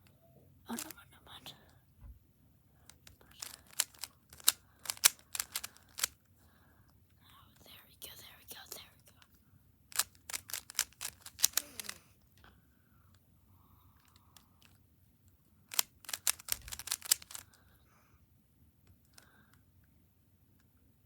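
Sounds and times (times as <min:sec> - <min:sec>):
puzzle cube plastic clicks: 0:00.7 - 0:01.0, 0:02.9 - 0:06.2, 0:09.9 - 0:12.4, 0:15.7 - 0:17.6.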